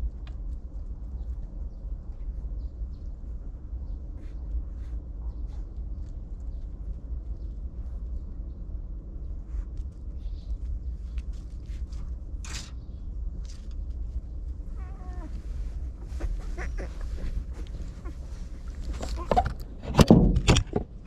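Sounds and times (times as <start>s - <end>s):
steady low rumble: 0.0s - 21.0s
puppies squeaking and whimpering: 16.0s - 19.5s
loud knocks and rustles: 19.0s - 21.0s.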